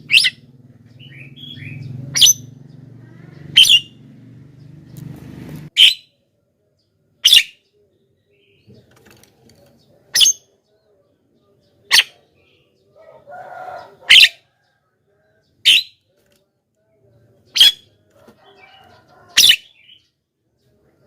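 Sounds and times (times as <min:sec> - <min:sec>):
bird chattering: 0:00.0 - 0:04.1, 0:09.8 - 0:10.6, 0:11.7 - 0:14.5, 0:17.5 - 0:20.0
bird calling sharply: 0:03.5 - 0:04.0.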